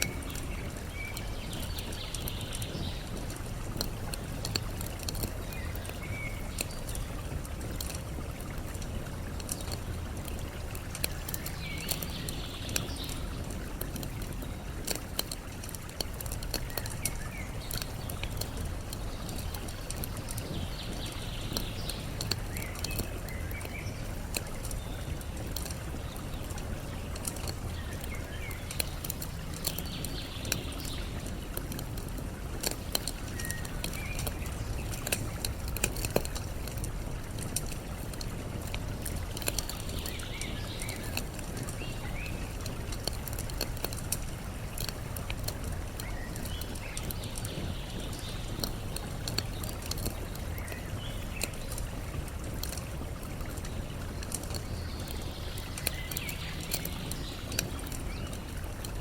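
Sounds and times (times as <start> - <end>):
birds chirping: 0.0 - 59.0
campfire crackling and popping: 0.0 - 59.0
flowing water: 0.0 - 59.0.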